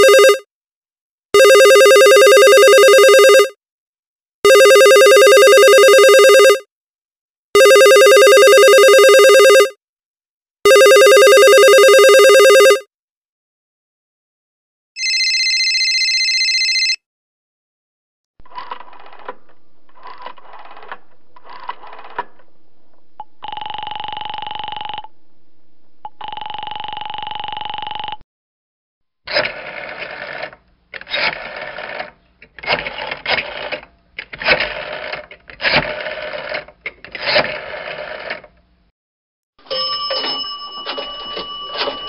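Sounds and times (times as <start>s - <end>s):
steady telephone line tones: 0.0s - 0.4s, 1.4s - 3.4s, 4.5s - 6.6s, 7.6s - 9.7s, 10.7s - 12.8s, 15.0s - 17.0s, 18.4s - 28.2s, 39.6s - 42.0s
rotary telephone dial whirring clicks: 29.3s - 38.6s.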